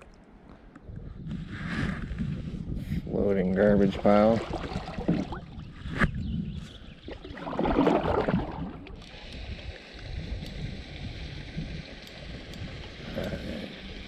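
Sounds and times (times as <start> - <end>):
wind buffeting microphone: 0.7 - 14.0
water rushing: 3.8 - 5.6, 7.1 - 9.2.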